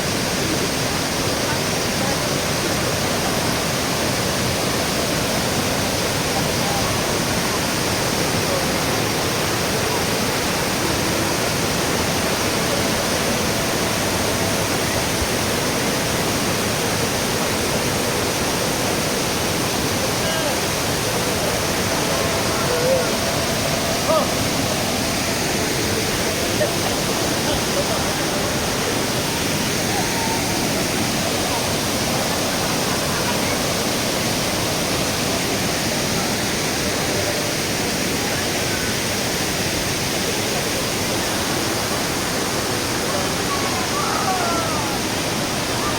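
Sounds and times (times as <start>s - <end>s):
waterfall roaring: 0.0s - 45.9s.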